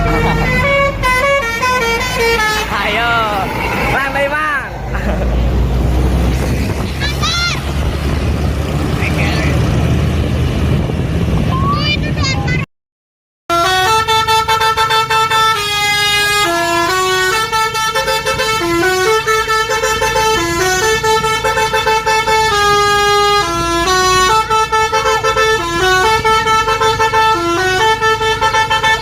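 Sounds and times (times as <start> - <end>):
multi-tone air horn melody: 0.0 - 4.0, 13.5 - 29.0.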